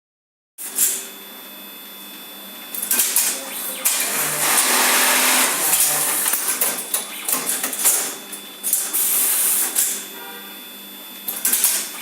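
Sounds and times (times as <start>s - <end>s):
sewing machine running: 3.0s - 8.1s.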